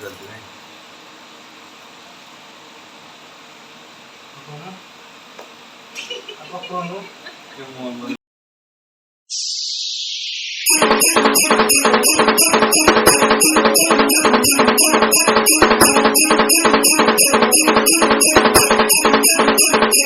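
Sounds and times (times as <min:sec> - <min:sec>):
whoosh: 0:09.3 - 0:10.7
music with jingling percussion: 0:10.7 - 0:20.0.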